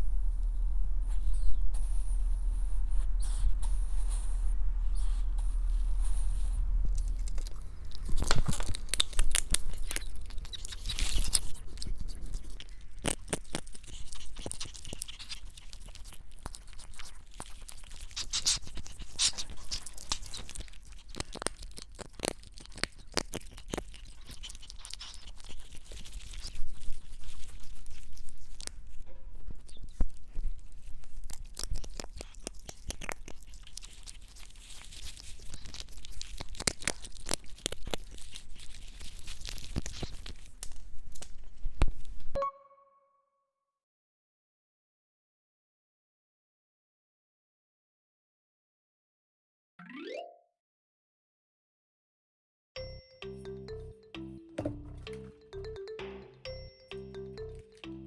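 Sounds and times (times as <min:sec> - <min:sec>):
ferret crunching dry kibble: 0:05.0 - 0:41.7.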